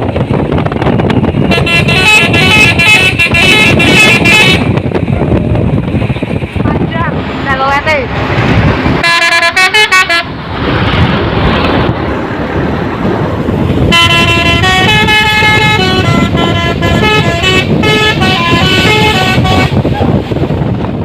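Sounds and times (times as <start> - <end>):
musical air horn: 1.4 - 4.8, 9.0 - 10.4, 13.9 - 19.8.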